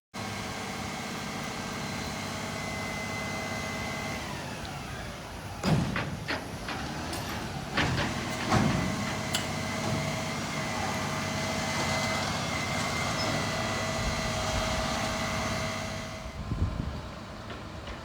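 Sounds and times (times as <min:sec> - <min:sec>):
truck engine running: 0:00.2 - 0:18.0
metal knocks and clanks: 0:05.6 - 0:10.2.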